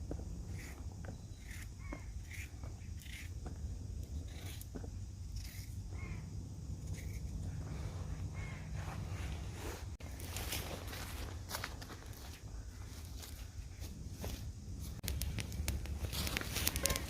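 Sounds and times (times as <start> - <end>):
harsh bird calls: 0.5 - 3.3, 5.9 - 6.3, 6.9 - 9.3
steady low rumble: 3.0 - 17.0.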